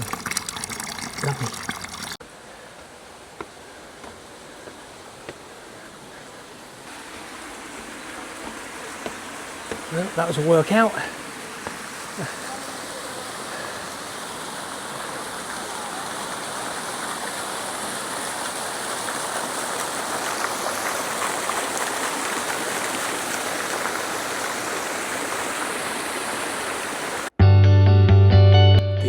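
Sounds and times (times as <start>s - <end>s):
fountain water rushing and splashing: 5.4s - 27.3s
loud guitar music: 27.4s - 29.0s.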